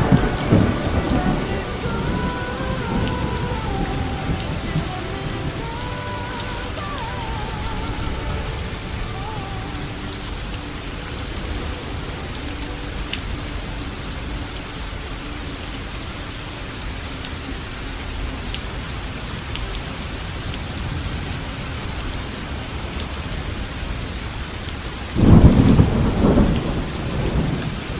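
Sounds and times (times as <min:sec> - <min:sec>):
thunder rolling: 0:00.0 - 0:10.4, 0:25.2 - 0:27.9
steady rain falling: 0:00.0 - 0:27.9.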